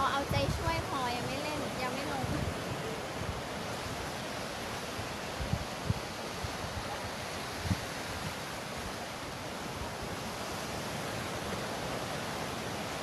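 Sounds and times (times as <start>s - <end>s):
wind thumps on microphone: 0.0s - 3.4s, 5.0s - 8.5s
sea surf hissing: 0.0s - 13.0s.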